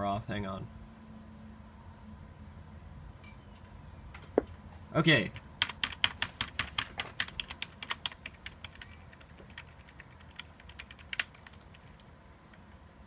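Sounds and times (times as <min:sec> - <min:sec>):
keyboard keys clicking: 0:05.6 - 0:12.6.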